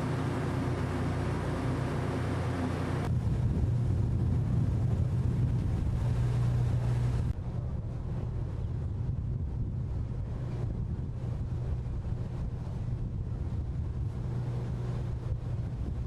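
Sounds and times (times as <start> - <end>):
boat engine humming: 0.0 - 16.0
wind buffeting microphone: 2.0 - 16.0.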